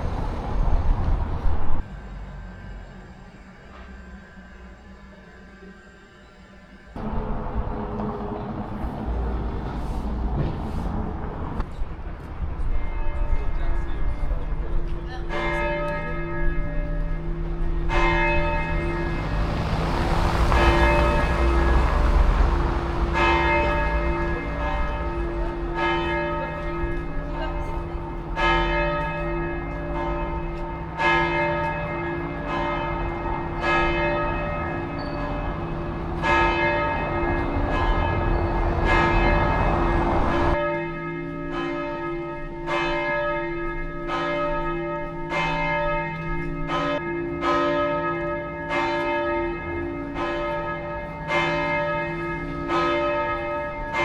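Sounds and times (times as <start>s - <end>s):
church bells ringing: 0.0s - 10.1s, 12.0s - 54.0s
low rumble: 0.0s - 15.1s, 16.5s - 40.6s.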